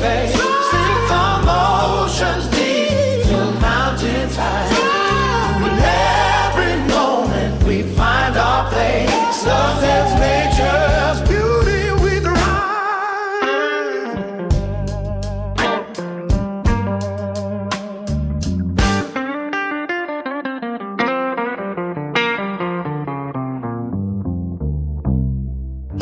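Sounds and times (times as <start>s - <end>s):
bass line: 0.0s - 12.6s, 14.4s - 19.2s, 23.6s - 26.0s
drums: 0.0s - 12.8s, 14.5s - 19.4s
person singing: 0.0s - 14.7s.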